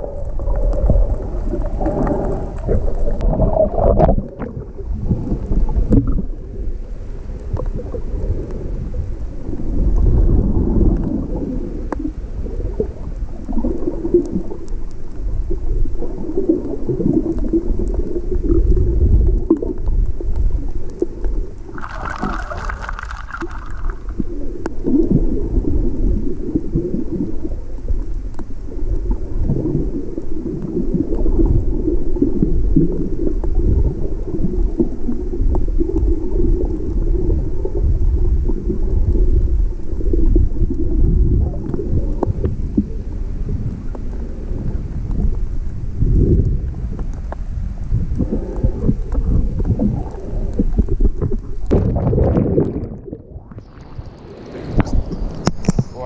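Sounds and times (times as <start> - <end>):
water splashing: 0.0 - 6.4, 12.7 - 42.8, 48.2 - 56.0
sea water churning and sloshing: 0.0 - 56.0.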